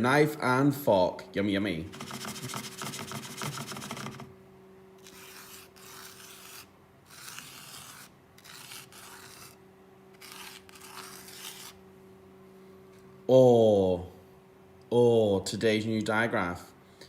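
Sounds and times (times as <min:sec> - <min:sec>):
faint steady hum: 0:00.0 - 0:17.0
scratchy pen strokes: 0:01.9 - 0:04.3, 0:05.0 - 0:09.6, 0:10.2 - 0:11.8.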